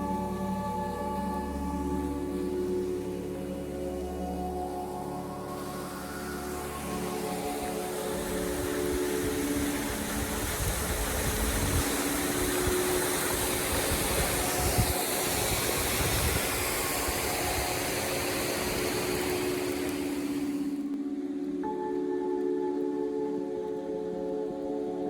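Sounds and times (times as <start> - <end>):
soft music drone: 0.0 - 25.0
stream water rushing: 1.1 - 21.0.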